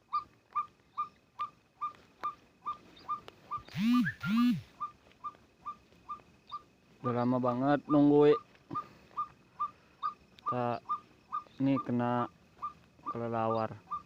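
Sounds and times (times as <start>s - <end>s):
waterhen calling: 0.0s - 6.7s, 7.9s - 14.0s.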